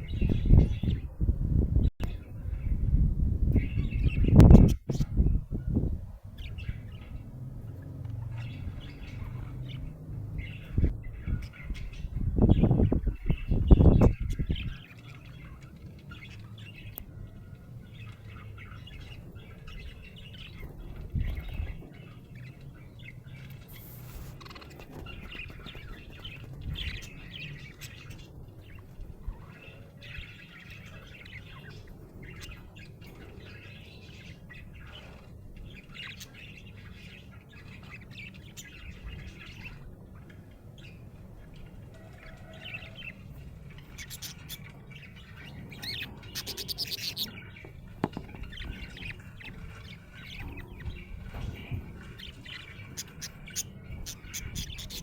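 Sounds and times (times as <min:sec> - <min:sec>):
low rumble with thumps: 0:00.0 - 0:14.8, 0:45.0 - 0:54.9
budgerigar chirping: 0:43.8 - 0:50.9.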